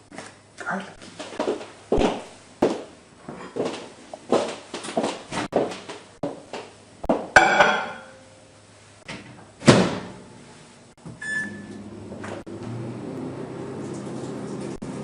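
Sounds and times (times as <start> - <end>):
appliance low hum: 0.0 - 15.0
short electronic beep: 11.2 - 11.7.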